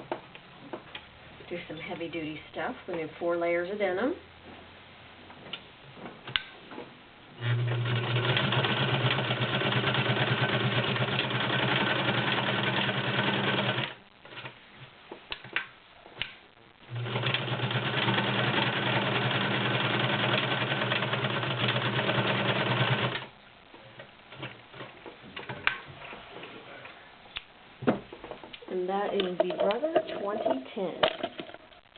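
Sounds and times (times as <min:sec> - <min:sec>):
sewing machine stitching: 0:07.4 - 0:14.5, 0:16.9 - 0:23.3.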